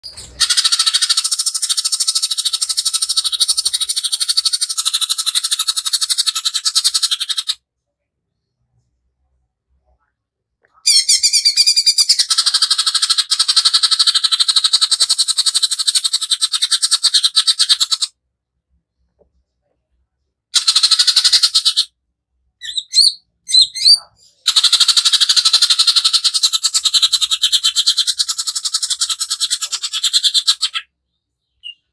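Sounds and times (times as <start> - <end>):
bird rattling call: 0.0 - 7.6, 20.6 - 21.9.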